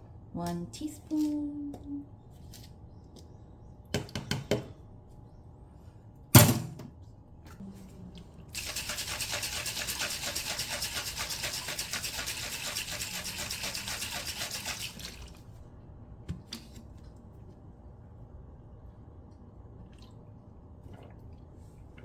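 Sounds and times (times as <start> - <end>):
rhythmic swishing of drink mixing: 8.6 - 15.3.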